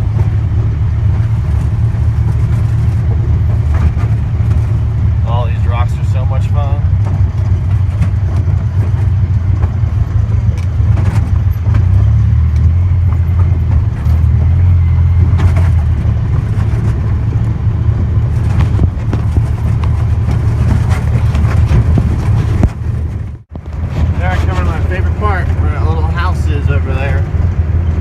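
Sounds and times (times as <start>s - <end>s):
knocks and rattles: 0.0s - 27.6s
vehicle engine humming: 0.0s - 28.0s.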